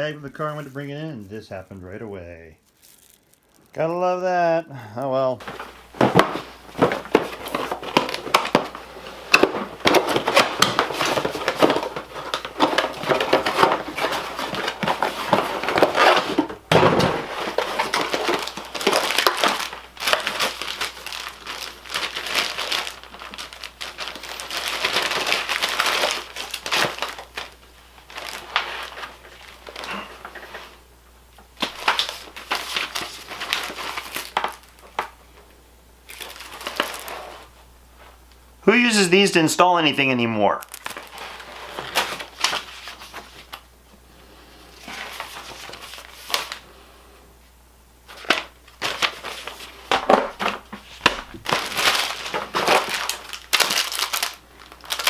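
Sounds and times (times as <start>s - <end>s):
packaging crinkling and tearing: 2.6s - 3.8s, 5.4s - 30.8s, 31.4s - 35.2s, 36.1s - 37.5s, 40.6s - 43.7s, 44.8s - 46.7s, 48.1s - 55.0s.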